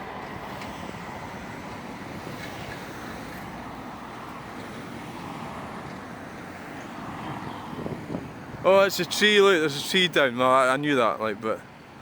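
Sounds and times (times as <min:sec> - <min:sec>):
road traffic passing: 0:00.0 - 0:12.0
wind on microphone: 0:07.0 - 0:08.7.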